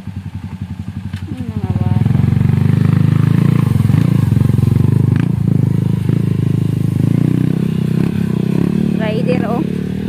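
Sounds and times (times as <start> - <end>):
motorcycle engine running: 0.0 - 10.0.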